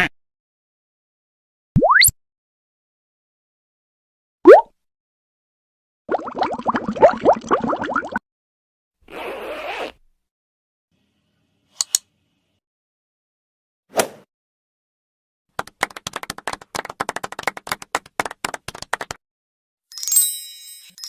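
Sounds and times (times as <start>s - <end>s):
brief swish: 13.9s - 14.3s
rapid clapping: 15.5s - 19.2s.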